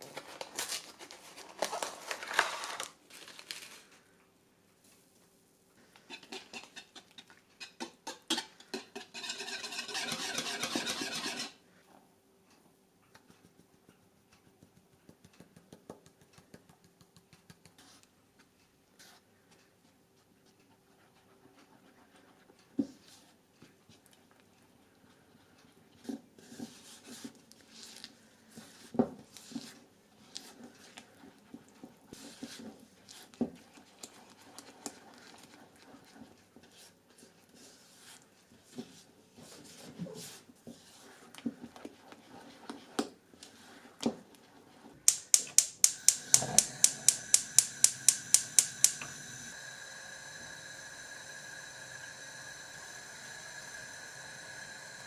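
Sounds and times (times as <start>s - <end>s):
rustling: 0.0s - 4.1s.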